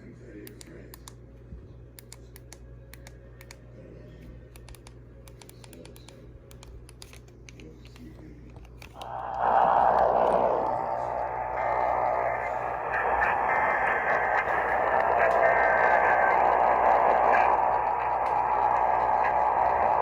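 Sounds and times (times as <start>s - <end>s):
low steady hum: 0.0s - 20.0s
keyboard key clicks: 4.6s - 9.1s
radio static hiss: 8.9s - 20.0s.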